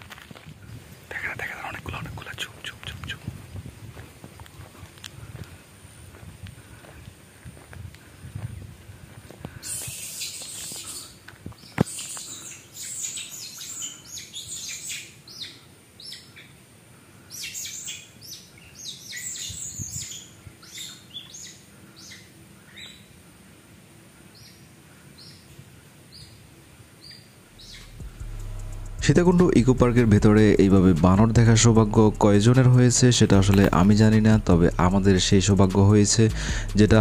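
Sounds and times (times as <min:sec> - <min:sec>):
high-pitched chirping calls: 0:09.6 - 0:16.5, 0:27.0 - 0:29.0.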